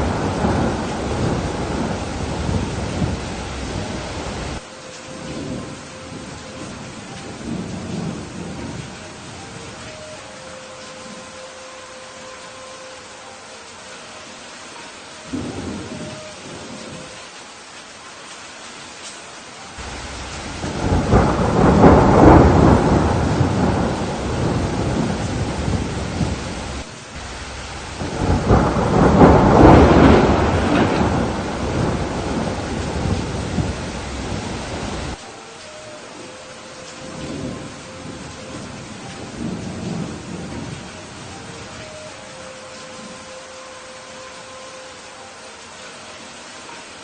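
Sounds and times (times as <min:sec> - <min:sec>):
thunder rolling: 0:00.0 - 0:09.7, 0:19.8 - 0:35.2, 0:37.0 - 0:41.8
steady rain: 0:00.0 - 0:47.0.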